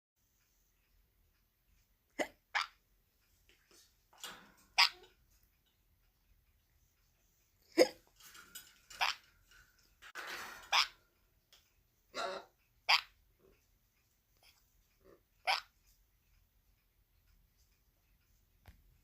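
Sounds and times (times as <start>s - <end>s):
parrot imitating hiccups: 2.1s - 2.8s, 4.8s - 5.1s, 8.9s - 9.2s, 10.6s - 11.0s, 12.1s - 13.2s, 15.1s - 15.8s
person hiccuping: 12.2s - 12.5s.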